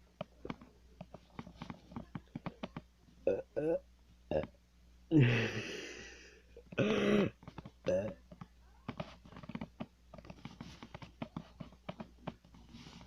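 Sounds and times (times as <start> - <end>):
small clicks and taps: 0.1 - 2.9, 7.4 - 13.0
deep burp: 3.2 - 5.6, 6.8 - 8.2.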